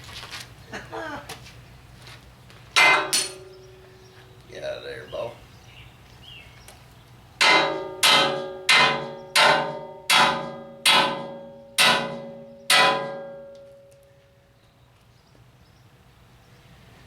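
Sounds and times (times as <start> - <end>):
hammer striking steel: 2.8 - 3.9, 7.4 - 14.0.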